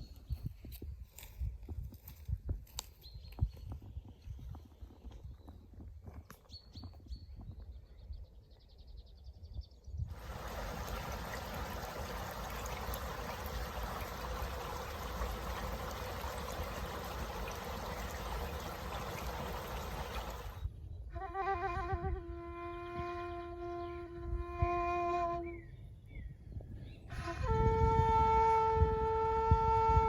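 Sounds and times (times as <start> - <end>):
stream water rushing: 10.1 - 20.6.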